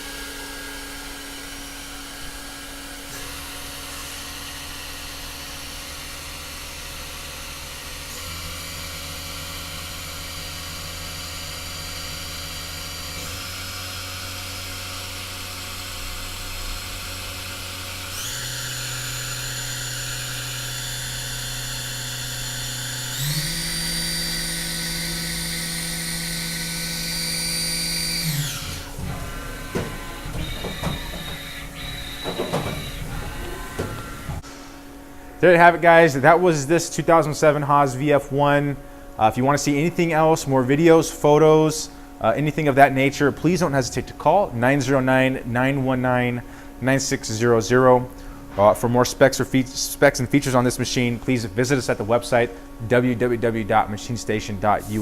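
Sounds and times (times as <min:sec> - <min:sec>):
machine spindle whining: 0:00.0 - 0:38.0.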